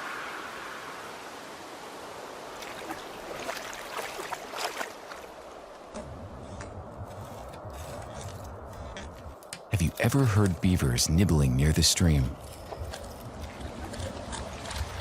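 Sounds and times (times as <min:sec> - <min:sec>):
steady rush of water: 0:00.0 - 0:06.0
water splashing and trickling: 0:02.3 - 0:06.0
sharp splashes: 0:02.5 - 0:05.6.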